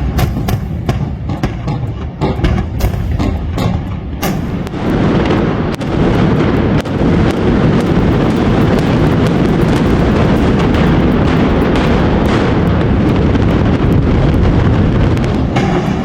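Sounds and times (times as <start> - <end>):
building collapsing rumble: 0.0 - 16.0.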